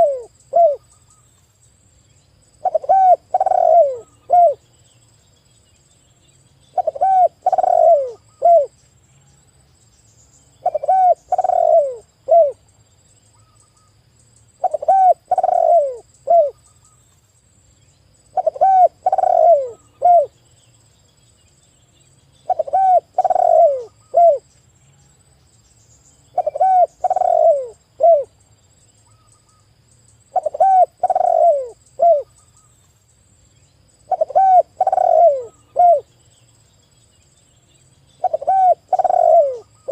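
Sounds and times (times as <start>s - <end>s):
dove cooing: 0.0s - 0.8s, 2.6s - 4.6s, 6.7s - 8.8s, 10.6s - 12.6s, 14.6s - 16.6s, 18.3s - 20.4s, 22.4s - 24.5s, 26.3s - 28.3s, 30.3s - 32.3s, 34.1s - 36.1s, 38.2s - 39.9s.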